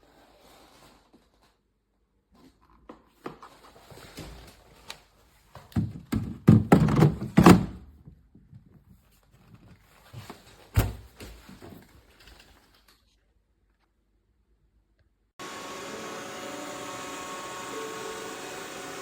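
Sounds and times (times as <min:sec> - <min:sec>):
plastic tank knocks and thunks: 0:05.8 - 0:07.8.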